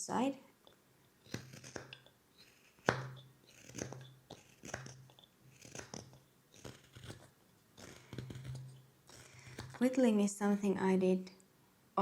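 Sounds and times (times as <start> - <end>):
knife shaving wood: 1.2 - 10.0.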